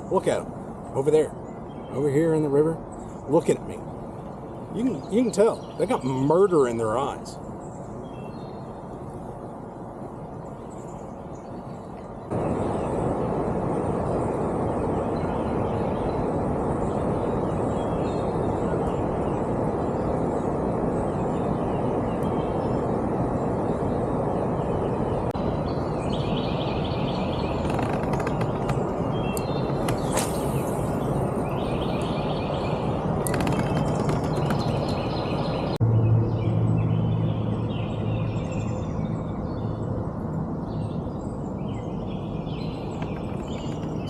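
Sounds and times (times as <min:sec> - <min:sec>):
small birds chirping: 0:00.0 - 0:13.1, 0:15.0 - 0:40.0, 0:40.6 - 0:44.0
steady outdoor rushing noise: 0:00.0 - 0:44.0
low hum: 0:08.6 - 0:44.0
small bird chirping: 0:25.6 - 0:35.8.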